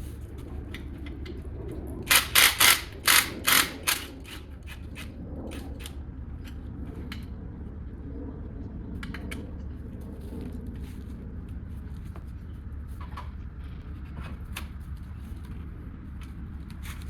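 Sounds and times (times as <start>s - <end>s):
steady low hum: 0.0s - 17.0s
hand ratchet strokes: 2.1s - 4.8s
tools clicking and knocking: 2.1s - 6.6s.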